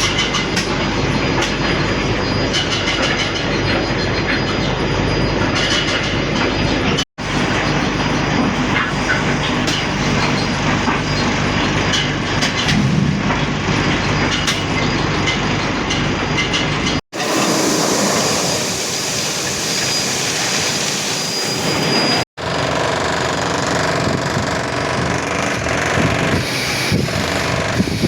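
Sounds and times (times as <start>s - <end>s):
machine hiss with high whine: 17.2s - 22.2s.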